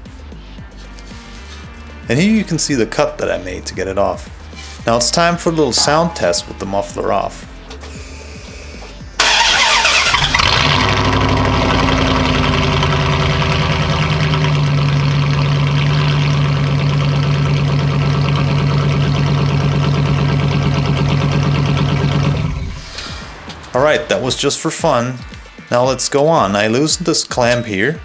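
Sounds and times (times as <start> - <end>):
engine starting and idling loudly: 2.2 - 24.5.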